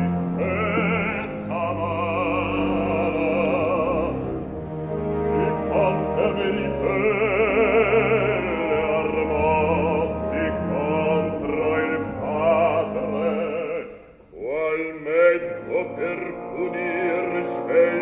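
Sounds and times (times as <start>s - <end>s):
operatic bass voice singing: 0.0s - 4.4s
orchestral accompaniment: 0.0s - 18.0s.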